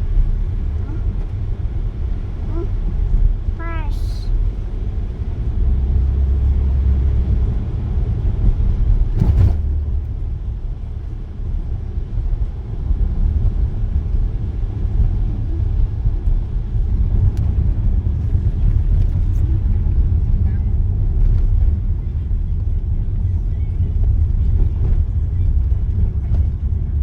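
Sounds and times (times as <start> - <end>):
road traffic rumble: 0.0 - 27.0.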